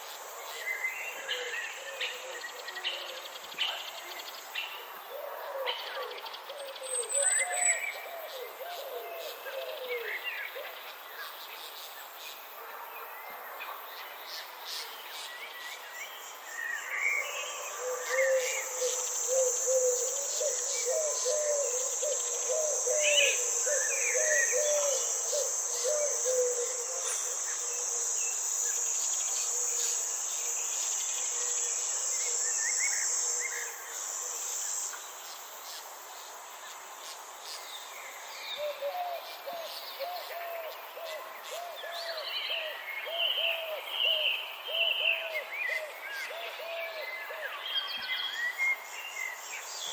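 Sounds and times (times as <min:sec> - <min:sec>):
high insect trill: 0:14.2 - 0:49.9.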